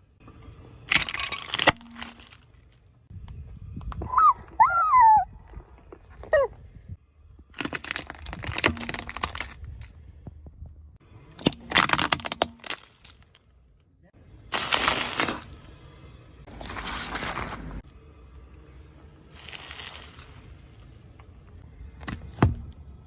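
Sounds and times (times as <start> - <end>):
objects crunching under tyre: 0.8 - 3.0, 7.4 - 10.4, 11.4 - 13.6, 14.5 - 15.8, 16.5 - 17.9, 19.3 - 22.7
high squeals: 4.0 - 5.6.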